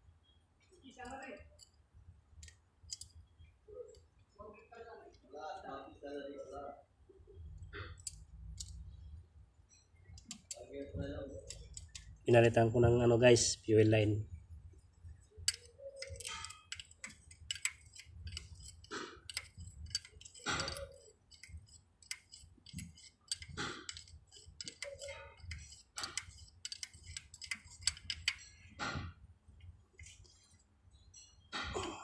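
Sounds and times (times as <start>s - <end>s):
light tool clicks and taps: 10.2s - 12.2s, 15.4s - 28.5s.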